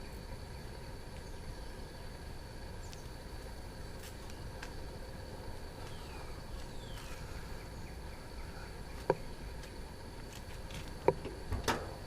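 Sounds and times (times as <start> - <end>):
faint outdoor background: 0.0 - 12.0.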